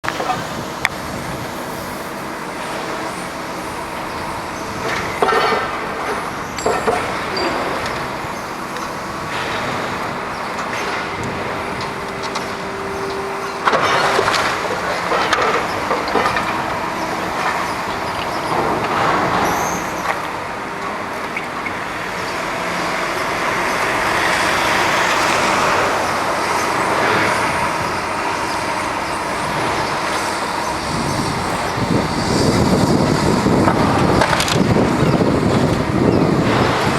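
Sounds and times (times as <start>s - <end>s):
diesel engine running: 0.0s - 36.9s
debris knocks and crashes: 13.6s - 20.4s.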